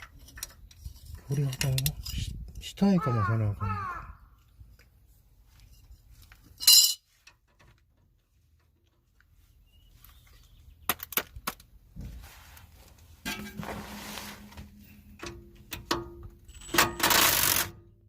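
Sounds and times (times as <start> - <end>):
metal tools clinking: 0.0 - 2.7, 5.7 - 7.4, 14.7 - 17.4
scraping and rustling: 12.0 - 15.1.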